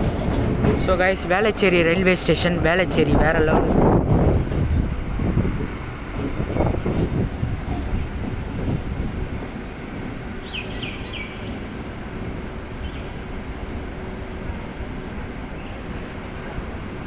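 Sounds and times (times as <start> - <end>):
low rumble of train: 0.0 - 17.0
bird chirping: 10.4 - 11.6.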